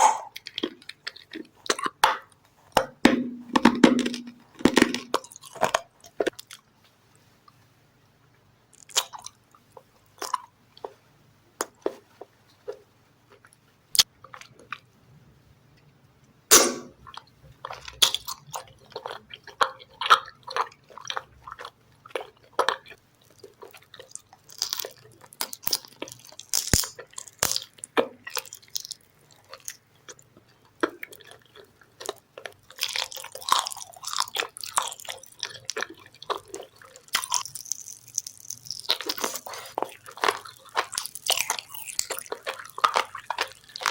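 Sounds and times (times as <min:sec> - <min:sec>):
chewing crunchy food: 0:00.0 - 0:06.7, 0:08.7 - 0:11.0, 0:11.6 - 0:15.0, 0:17.0 - 0:43.9
sharp bites and mouth clicks: 0:17.9 - 0:30.2, 0:30.8 - 0:43.9
loud crunching bite: 0:24.5 - 0:27.7, 0:32.0 - 0:43.9.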